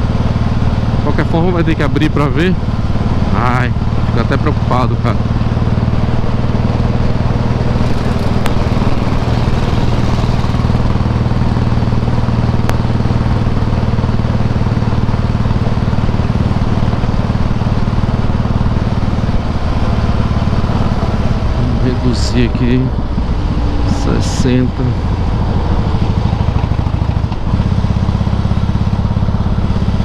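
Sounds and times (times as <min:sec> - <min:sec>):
motorcycle v-twin engine running: 0:05.1 - 0:21.6, 0:24.5 - 0:30.0.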